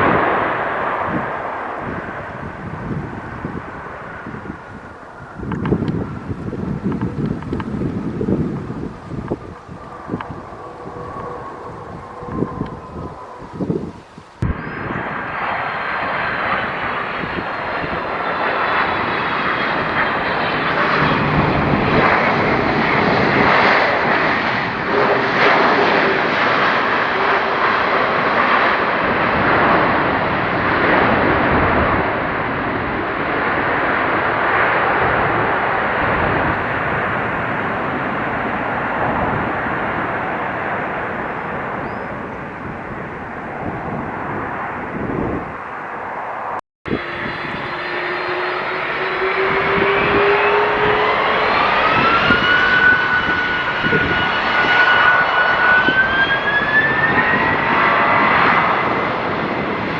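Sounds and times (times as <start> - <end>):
jet engines roaring past: 0.0 - 59.9
faint high whine: 8.2 - 21.2.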